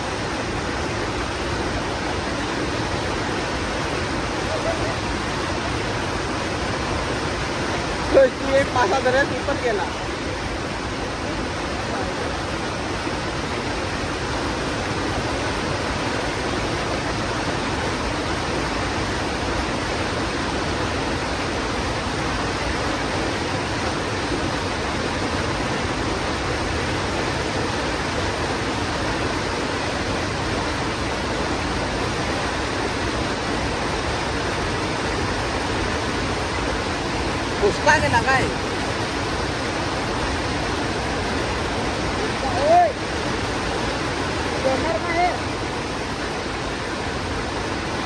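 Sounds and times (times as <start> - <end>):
river water rushing: 0.0 - 48.0.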